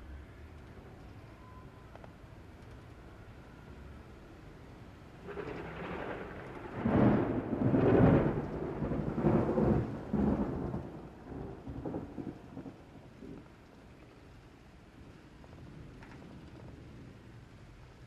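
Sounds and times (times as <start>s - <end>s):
thunder rumbling: 5.0s - 18.0s.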